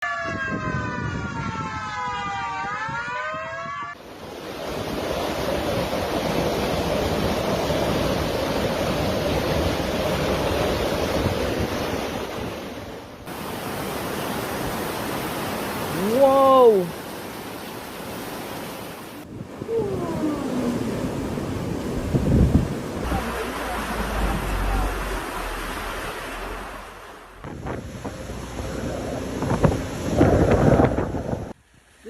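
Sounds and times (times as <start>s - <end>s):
wailing wind tone: 0.0s - 4.2s, 19.2s - 31.6s
hurricane winds rushing: 0.0s - 32.0s.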